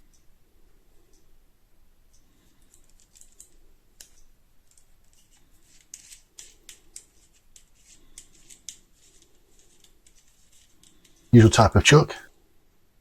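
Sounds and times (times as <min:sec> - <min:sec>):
plastic parts clicking: 0:02.6 - 0:11.3.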